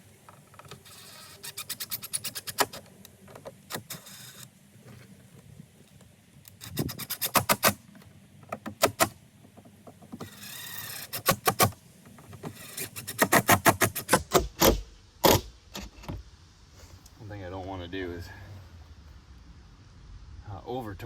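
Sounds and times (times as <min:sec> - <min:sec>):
hand tool clicking: 0:00.6 - 0:02.9, 0:06.4 - 0:07.8, 0:08.6 - 0:09.2, 0:10.2 - 0:11.8, 0:12.5 - 0:15.9
scraping: 0:06.5 - 0:16.2.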